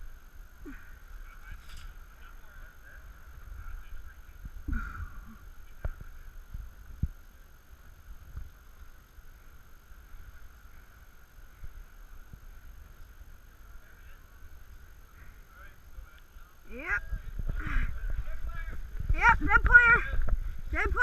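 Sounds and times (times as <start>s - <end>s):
wind rumble on microphone: 0.0s - 21.0s
microphone handling noise: 17.1s - 20.8s.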